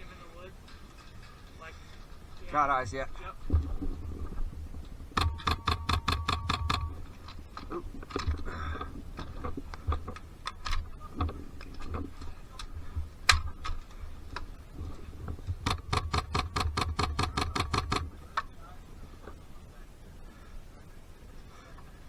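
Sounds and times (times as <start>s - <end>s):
airsoft guns firing: 5.2s - 7.4s, 15.6s - 18.3s.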